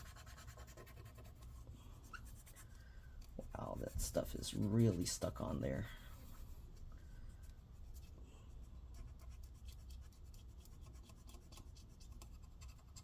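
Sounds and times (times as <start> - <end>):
paper towel scrubbing metal: 0.0 - 5.9.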